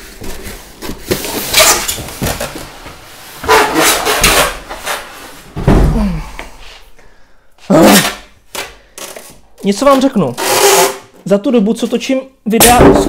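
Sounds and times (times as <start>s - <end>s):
polystyrene blocks squeaking: 3.2s - 5.3s, 8.8s - 11.2s.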